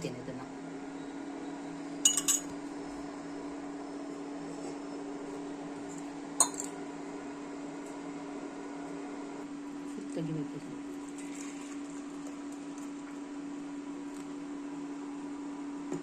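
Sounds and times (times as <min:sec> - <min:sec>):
steady low hum: 0:00.0 - 0:16.0
kitchen vessels clinking: 0:02.1 - 0:02.5, 0:06.4 - 0:06.7.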